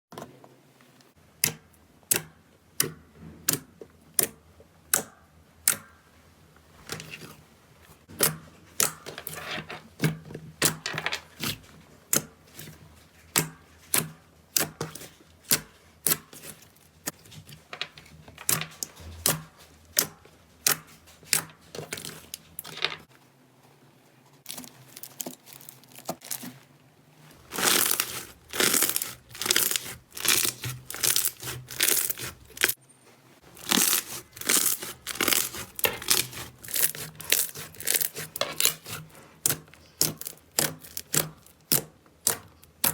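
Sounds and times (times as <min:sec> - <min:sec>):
slime popping and crackling: 0:27.4 - 0:32.8, 0:33.5 - 0:42.9.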